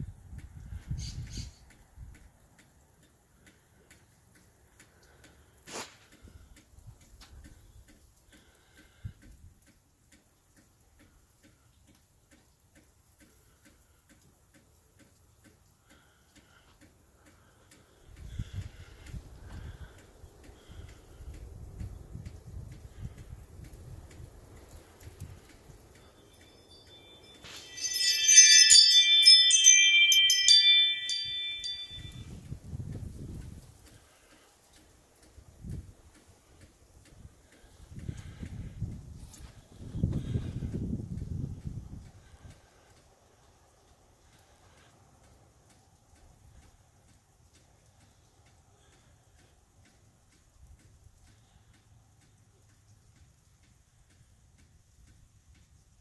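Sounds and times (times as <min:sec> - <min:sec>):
faint regular ticking: 0:01.7 - 0:32.2, 0:33.8 - 0:39.0, 0:41.1 - 0:56.0
wind chimes ringing: 0:26.3 - 0:32.3.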